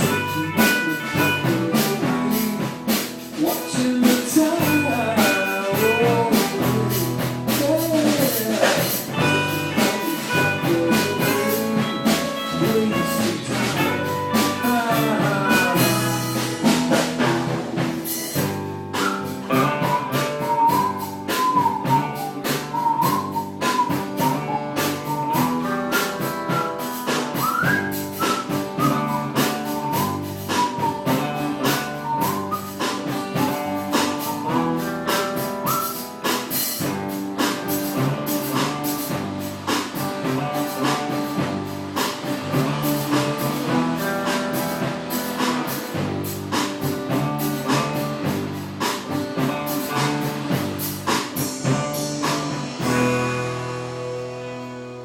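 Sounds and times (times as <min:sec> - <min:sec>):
whistled melody: 0:00.0 - 0:02.3, 0:09.1 - 0:16.4, 0:18.9 - 0:36.4
live band playing soul song: 0:00.0 - 0:55.0.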